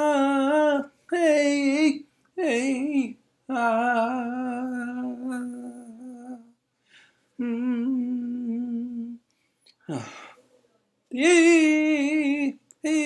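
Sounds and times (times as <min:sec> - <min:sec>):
person singing wordless melody: 0:00.0 - 0:06.6, 0:07.4 - 0:09.3, 0:11.1 - 0:13.0
person breathing: 0:06.8 - 0:07.4, 0:09.3 - 0:10.6.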